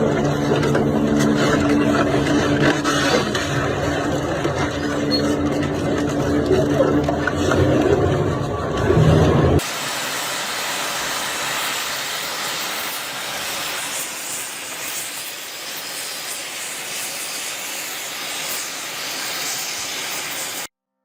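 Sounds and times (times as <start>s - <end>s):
steady hiss: 9.6s - 20.7s.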